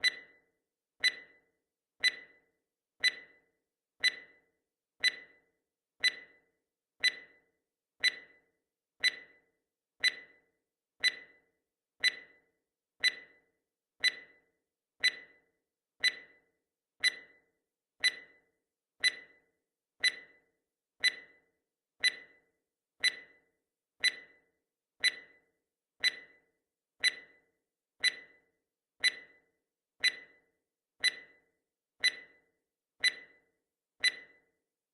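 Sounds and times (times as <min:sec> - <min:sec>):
sharp timer ticks: 0:00.0 - 0:00.3, 0:01.0 - 0:01.4, 0:02.0 - 0:02.4, 0:03.0 - 0:03.4, 0:04.0 - 0:04.4, 0:05.0 - 0:05.4, 0:06.0 - 0:06.4, 0:07.0 - 0:07.4, 0:08.0 - 0:08.4, 0:09.0 - 0:09.4, 0:10.0 - 0:10.4, 0:11.0 - 0:12.4, 0:13.0 - 0:13.4, 0:14.0 - 0:14.4, 0:15.0 - 0:16.4, 0:17.0 - 0:17.4, 0:18.0 - 0:18.4, 0:19.0 - 0:19.4, 0:20.0 - 0:20.4, 0:21.0 - 0:21.4, 0:22.0 - 0:22.4, 0:23.0 - 0:23.4, 0:24.0 - 0:24.4, 0:25.0 - 0:25.4, 0:26.0 - 0:26.4, 0:27.0 - 0:27.4, 0:28.0 - 0:28.4, 0:29.0 - 0:29.4, 0:30.0 - 0:30.4, 0:31.0 - 0:34.5.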